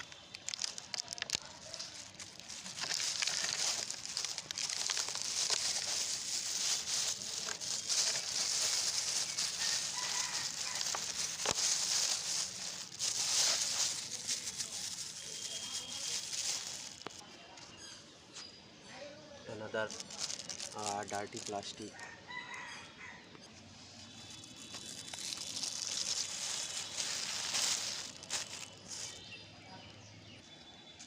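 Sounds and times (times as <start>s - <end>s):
plastic rubbish crinkling: 0.0s - 17.2s, 19.7s - 21.9s, 24.1s - 29.2s.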